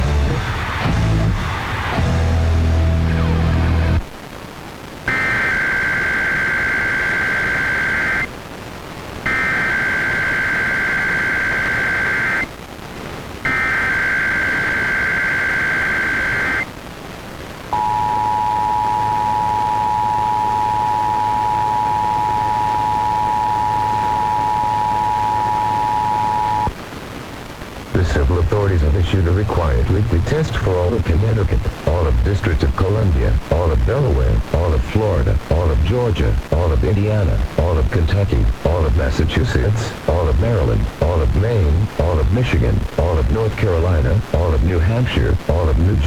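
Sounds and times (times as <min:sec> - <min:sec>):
music on radio: 0:00.0 - 0:04.2, 0:05.0 - 0:16.7, 0:17.4 - 0:46.0
two-tone attention signal: 0:17.8 - 0:26.7.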